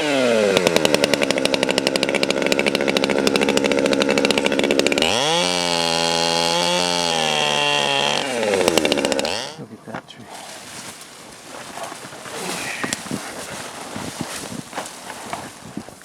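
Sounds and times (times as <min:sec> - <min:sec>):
chainsaw engine revving: 0:00.0 - 0:09.6, 0:10.3 - 0:15.7.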